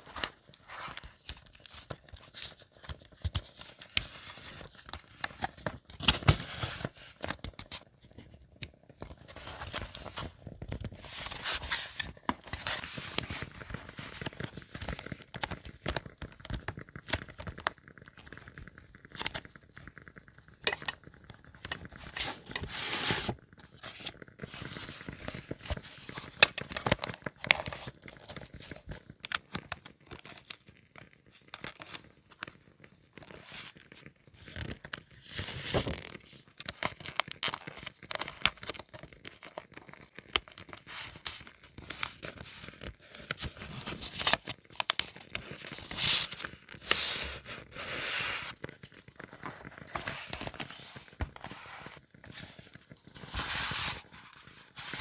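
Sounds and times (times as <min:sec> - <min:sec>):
paper rustling and tearing: 0:21.8 - 0:26.2, 0:41.8 - 0:55.0.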